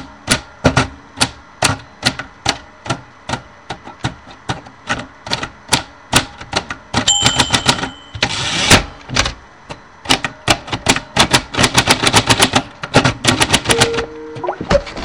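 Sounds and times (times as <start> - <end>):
typewriter keys clacking: 6.5 - 8.4, 10.2 - 14.1.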